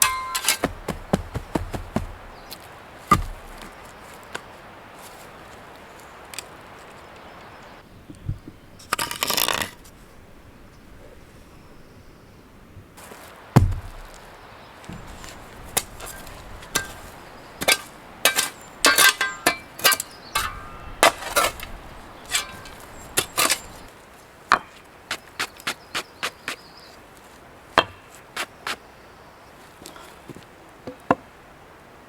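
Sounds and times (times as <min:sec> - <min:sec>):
heavy thud: 0:00.0 - 0:02.4, 0:03.1 - 0:03.8, 0:13.6 - 0:14.3
hammering on wood: 0:00.0 - 0:02.5, 0:03.1 - 0:03.8, 0:13.6 - 0:14.2, 0:27.8 - 0:28.1.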